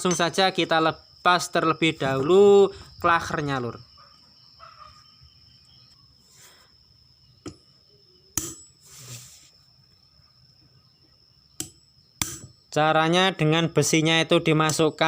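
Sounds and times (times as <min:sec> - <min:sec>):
sharp metal clinks: 0:00.0 - 0:01.0, 0:08.4 - 0:08.8.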